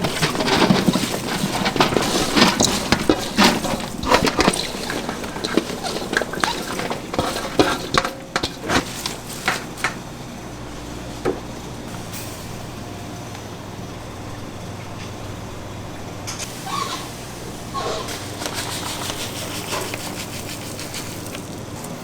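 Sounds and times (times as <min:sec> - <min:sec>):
utensils and dishes clinking: 0:00.0 - 0:10.1, 0:16.3 - 0:22.0
low mechanical hum: 0:00.0 - 0:22.0.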